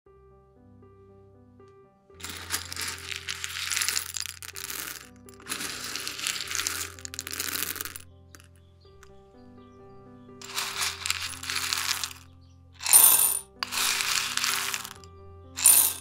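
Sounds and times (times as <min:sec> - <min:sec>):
soft background music: 0:00.1 - 0:16.0
loud crackling rustling noise: 0:10.4 - 0:12.2.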